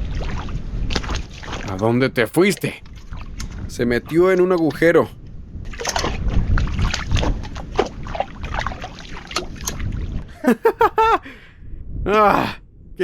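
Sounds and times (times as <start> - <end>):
splashing in muddy water: 0.0 - 4.9, 5.7 - 10.2
man exclaiming: 10.4 - 11.4, 12.1 - 12.6.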